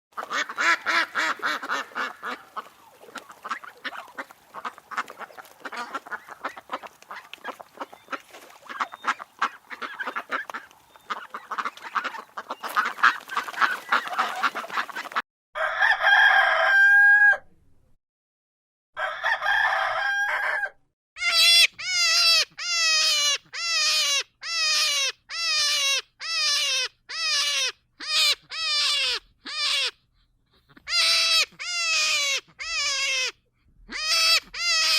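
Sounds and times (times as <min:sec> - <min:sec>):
chickens chattering: 0:00.2 - 0:15.2
short falling bird calls: 0:00.3 - 0:15.1
rooster crowing: 0:15.6 - 0:17.5, 0:19.0 - 0:20.8.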